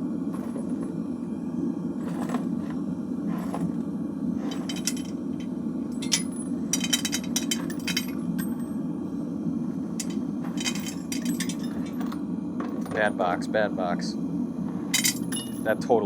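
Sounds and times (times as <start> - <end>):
furnace burner roaring: 0.0 - 16.0
metal casings clinking: 4.4 - 8.7, 9.9 - 13.2, 14.9 - 15.7.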